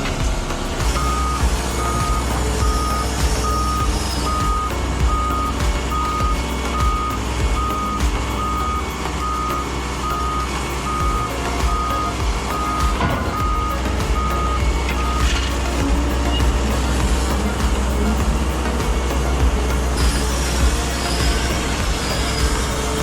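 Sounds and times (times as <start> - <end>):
diesel engine running: 0.0 - 23.0
back-up alarm beeping: 1.0 - 11.9.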